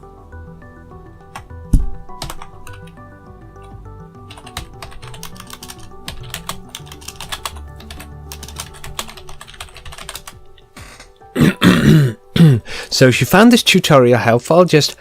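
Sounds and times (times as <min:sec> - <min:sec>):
background music with melody: 0:00.0 - 0:15.0
computer keyboard and mouse clicking: 0:01.3 - 0:03.0, 0:04.3 - 0:11.2.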